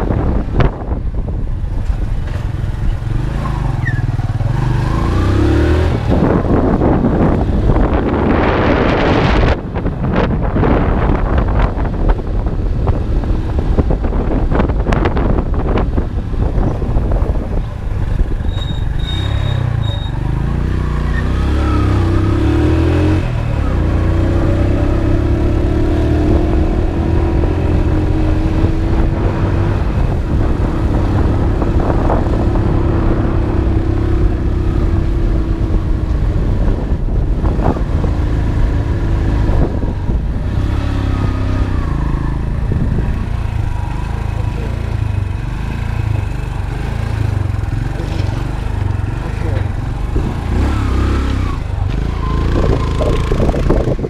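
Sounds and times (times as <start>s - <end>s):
passing traffic: 0.0s - 54.0s
road and wind noise: 0.0s - 54.0s
motorcycle engine running: 21.8s - 54.0s.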